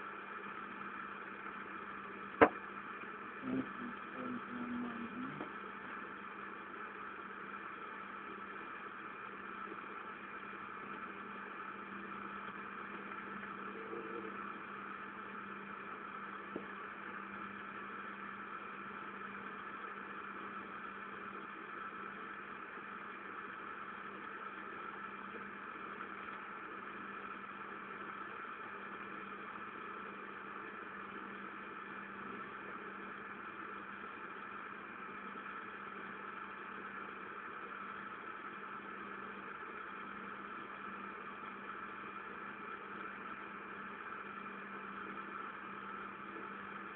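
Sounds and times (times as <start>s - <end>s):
machinery humming: 0.0s - 34.7s.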